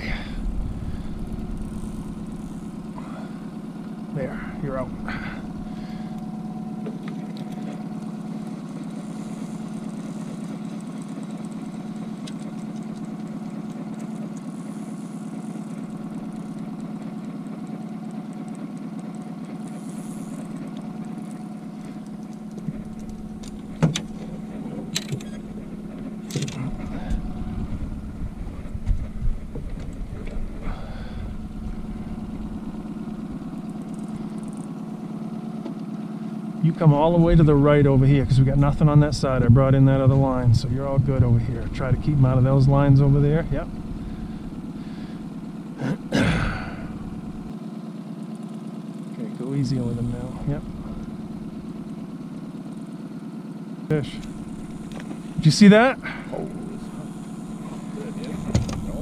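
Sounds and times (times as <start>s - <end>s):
low rumble: 0.0s - 7.6s, 21.9s - 34.6s, 36.9s - 47.5s
outboard motor humming: 0.0s - 59.0s.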